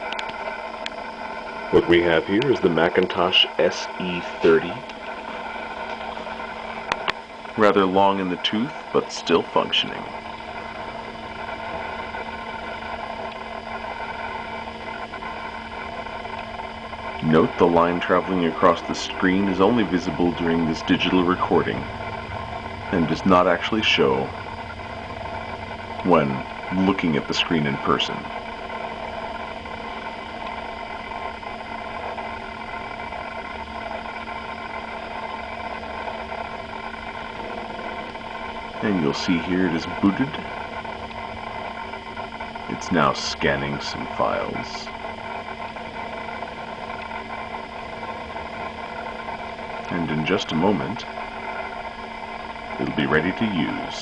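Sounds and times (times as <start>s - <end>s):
computer fan and hard drive hum: 0.0s - 54.0s
constant electronic tones: 0.0s - 54.0s
steady electronic tones: 8.9s - 35.2s.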